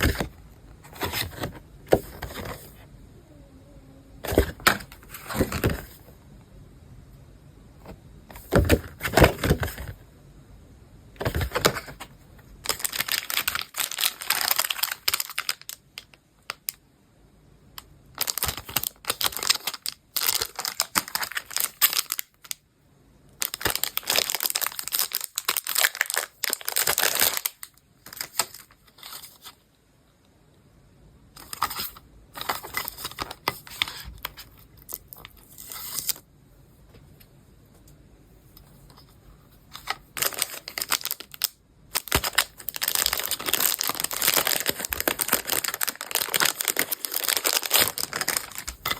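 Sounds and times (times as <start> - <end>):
packaging crinkling and tearing: 11.2 - 16.1, 18.2 - 22.6, 23.4 - 29.5, 31.4 - 36.2, 39.8 - 48.9.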